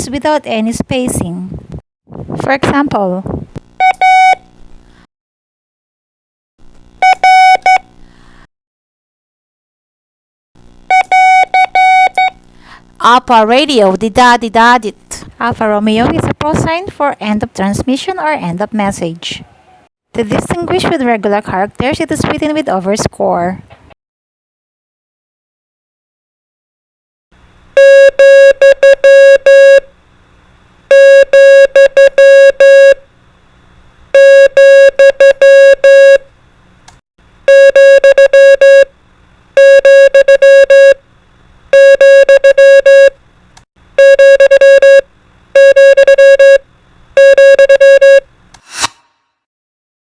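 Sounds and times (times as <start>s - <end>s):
morse code beeps: 3.8s - 4.4s, 7.0s - 7.8s, 10.9s - 12.4s, 27.8s - 29.8s, 30.9s - 33.0s, 34.2s - 36.2s, 37.5s - 38.9s, 39.6s - 41.0s, 41.8s - 43.1s, 44.0s - 45.0s, 45.6s - 46.6s, 47.2s - 48.2s
brief whoosh: 48.6s - 49.3s.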